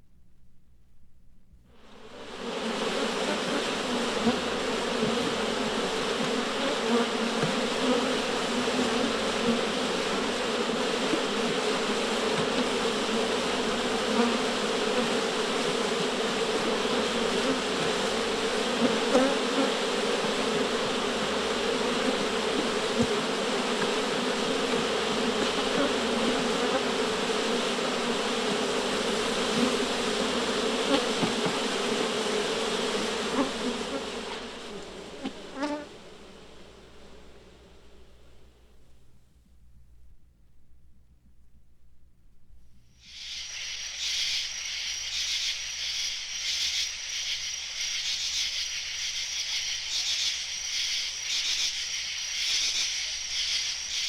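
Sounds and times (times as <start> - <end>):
swarm of bees buzzing: 2.0 - 38.0.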